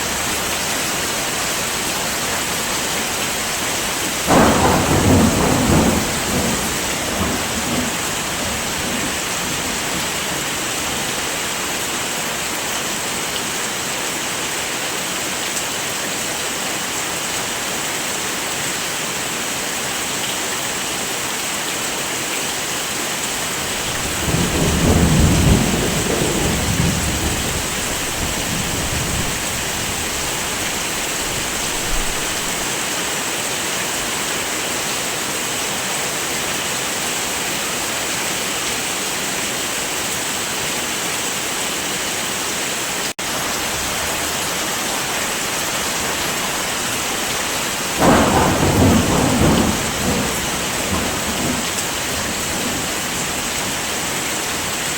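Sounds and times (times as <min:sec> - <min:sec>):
heavy rain: 0:00.0 - 0:54.9
low rolls of thunder: 0:04.2 - 0:10.6, 0:23.6 - 0:32.6, 0:48.0 - 0:54.2.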